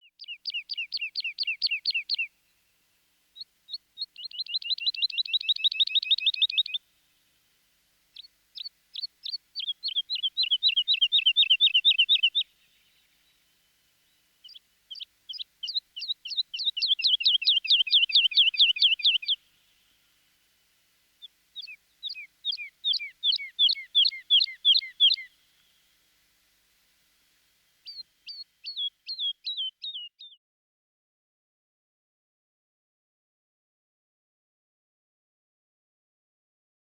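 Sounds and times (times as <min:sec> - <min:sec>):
skylark singing trills: 0:00.0 - 0:02.3, 0:03.4 - 0:06.8, 0:08.2 - 0:12.5, 0:14.4 - 0:19.4, 0:21.2 - 0:25.3, 0:27.8 - 0:30.4.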